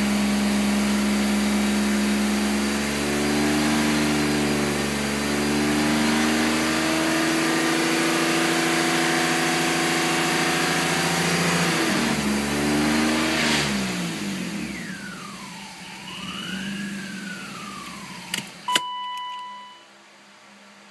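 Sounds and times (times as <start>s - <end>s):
wavering whine: 14.7s - 19.8s
short steady beep: 18.7s - 19.9s.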